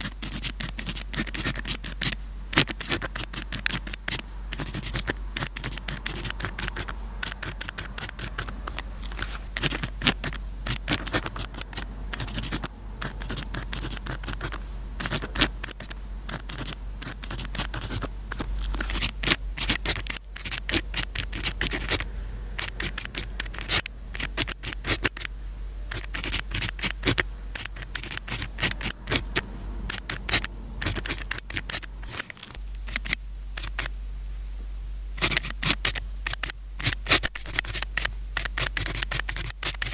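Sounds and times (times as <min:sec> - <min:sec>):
pen scratching on paper: 0:00.0 - 0:25.3, 0:25.9 - 0:33.9, 0:35.2 - 0:39.9.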